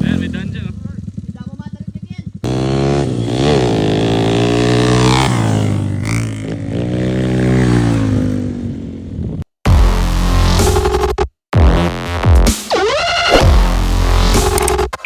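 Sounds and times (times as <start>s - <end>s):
motorcycle engine revving: 0.0s - 10.9s.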